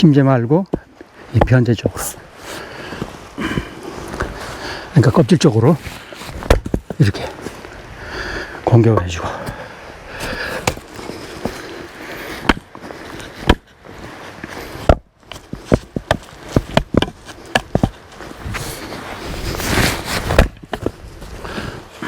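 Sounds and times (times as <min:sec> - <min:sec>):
scuffing sound: 0:03.9 - 0:07.7, 0:10.2 - 0:21.8
axe chopping wood: 0:06.4 - 0:06.9, 0:10.2 - 0:11.6, 0:12.4 - 0:12.7, 0:13.4 - 0:13.7, 0:14.6 - 0:18.8, 0:20.2 - 0:20.9.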